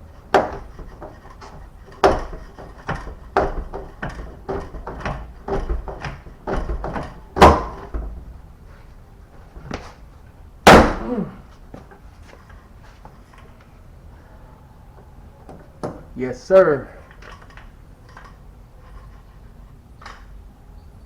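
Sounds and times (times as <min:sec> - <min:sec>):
car door mechanism thunks: 0:03.6 - 0:08.2.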